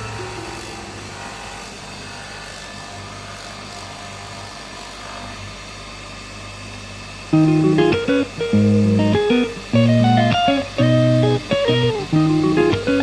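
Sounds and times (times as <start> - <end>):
machine motor humming: 0.0 - 2.8, 7.1 - 13.0.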